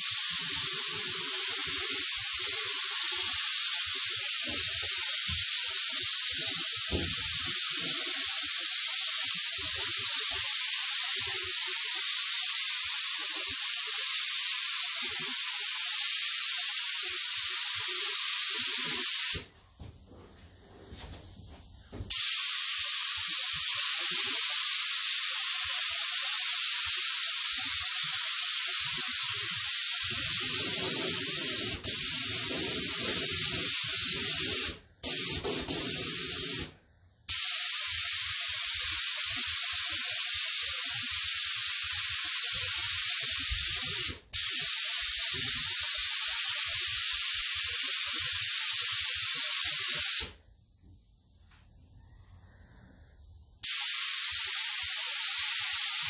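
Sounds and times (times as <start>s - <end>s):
spray paint hissing: 0.0s - 19.5s, 22.0s - 50.4s, 53.6s - 56.0s.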